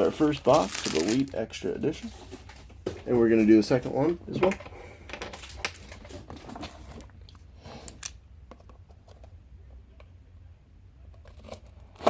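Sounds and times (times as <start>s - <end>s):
low steady hum: 0.0s - 12.0s
trading cards clicking and rustling: 0.2s - 2.7s.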